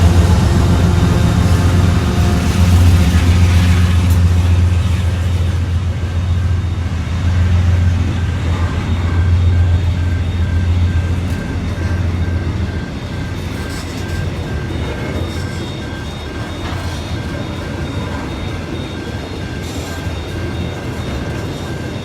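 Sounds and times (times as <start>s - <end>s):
train engine drone: 0.0s - 22.0s.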